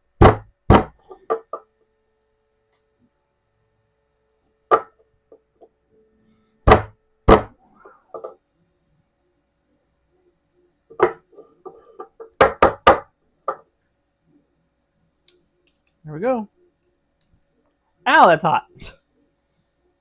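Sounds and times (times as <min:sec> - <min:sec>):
sharp knocks and taps on plastic: 0:00.2 - 0:01.7.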